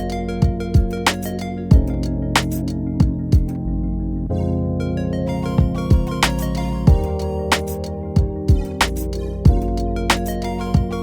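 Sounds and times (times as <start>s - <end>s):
synth chords: 0.0s - 11.0s
kick drum beat: 0.4s - 1.0s, 1.7s - 2.1s, 3.0s - 3.6s, 5.6s - 6.3s, 6.9s - 7.3s, 8.2s - 8.8s, 9.5s - 9.8s, 10.8s - 11.0s.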